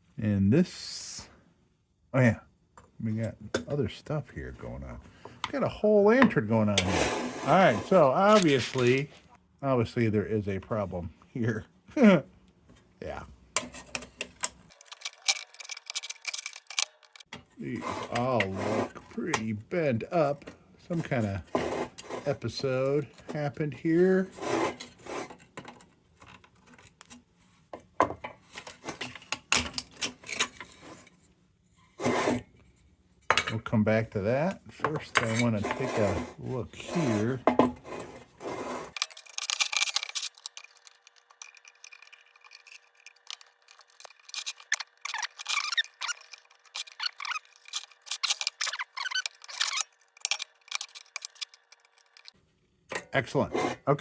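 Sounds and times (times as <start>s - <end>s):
metal scraping on metal: 6.6s - 9.2s, 13.6s - 19.5s, 20.9s - 25.4s, 34.7s - 52.4s, 53.2s - 54.0s
metal parts clicking and clinking: 7.5s - 9.1s, 13.6s - 17.3s, 38.9s - 52.4s.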